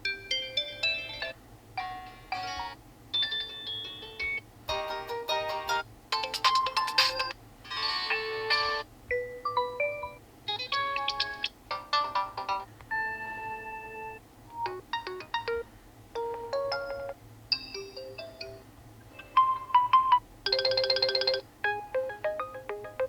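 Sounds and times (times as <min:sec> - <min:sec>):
short electronic ringtone melodies: 0:16.2 - 0:18.6, 0:19.2 - 0:23.0.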